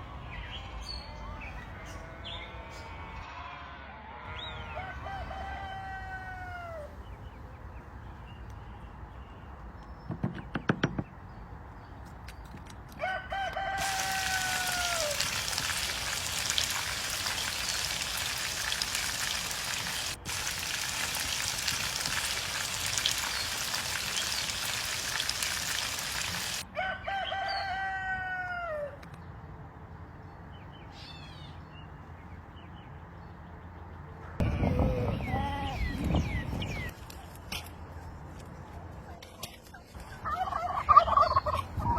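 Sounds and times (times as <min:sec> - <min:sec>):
roosters crowing: 0:04.6 - 0:07.0, 0:13.0 - 0:29.0.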